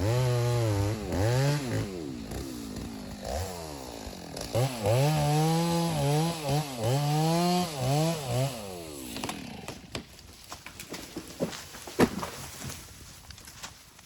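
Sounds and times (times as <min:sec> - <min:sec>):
chainsaw cutting wood: 0:00.0 - 0:12.4
wood cracking and snapping: 0:09.0 - 0:14.0.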